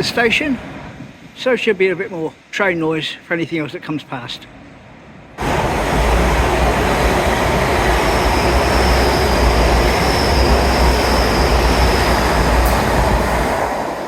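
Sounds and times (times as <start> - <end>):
train wheels rushing on rail: 5.4 - 14.0.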